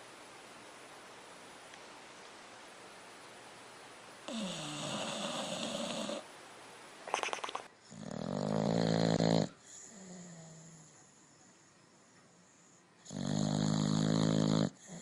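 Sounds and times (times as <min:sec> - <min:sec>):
dog snorting: 0:04.3 - 0:06.2, 0:07.1 - 0:10.0
dog snoring loudly: 0:04.3 - 0:06.3, 0:07.9 - 0:10.9, 0:13.0 - 0:15.0.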